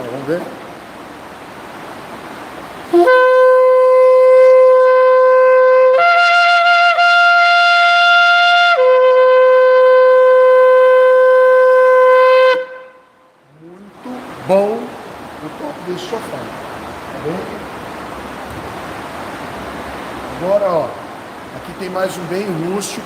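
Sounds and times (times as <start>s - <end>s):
shofar blast: 2.9s - 13.4s.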